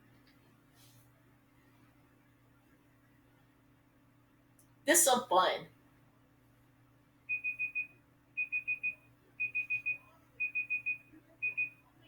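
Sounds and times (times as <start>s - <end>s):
timer alarm beeping: 7.3s - 11.8s.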